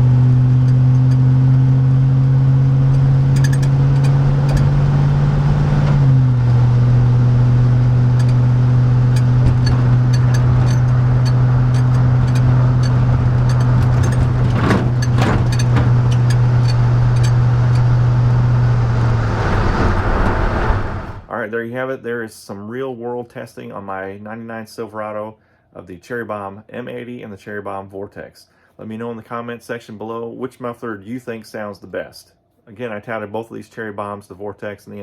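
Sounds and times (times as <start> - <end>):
low exhaust drone inside cab: 0.0 - 21.3.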